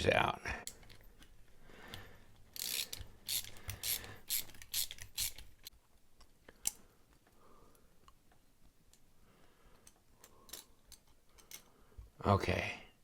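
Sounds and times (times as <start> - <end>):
metal parts scratchy rasps: 2.5 - 5.7.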